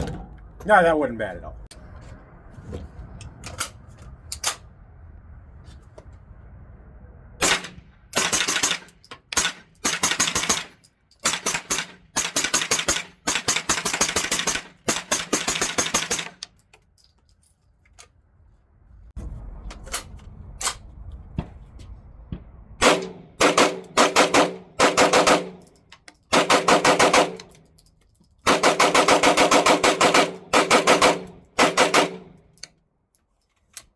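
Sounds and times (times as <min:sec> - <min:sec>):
rapid gunshots: 0:07.4 - 0:16.3, 0:22.8 - 0:25.6, 0:26.3 - 0:27.4, 0:28.5 - 0:32.2.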